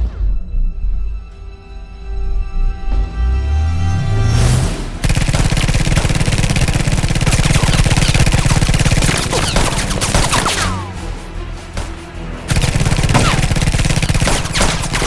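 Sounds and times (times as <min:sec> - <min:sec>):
rapid gunfire: 0:05.0 - 0:11.0, 0:12.5 - 0:15.0.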